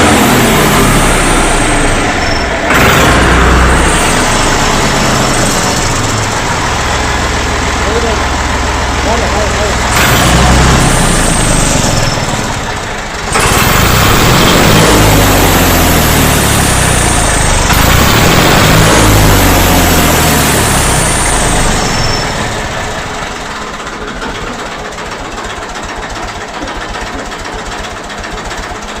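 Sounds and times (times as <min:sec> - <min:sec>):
whistling exhaust: 0:00.0 - 0:07.0, 0:09.1 - 0:12.8, 0:13.4 - 0:23.4
tractor engine revving and idling: 0:00.0 - 0:29.0.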